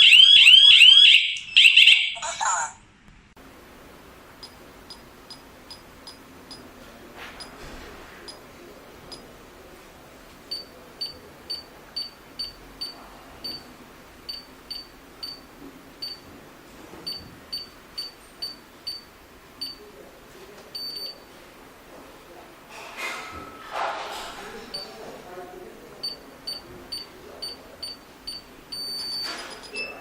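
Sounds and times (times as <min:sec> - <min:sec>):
keypad beeps: 0:10.5 - 0:12.6, 0:13.4 - 0:13.6, 0:17.1 - 0:19.0, 0:26.0 - 0:30.0.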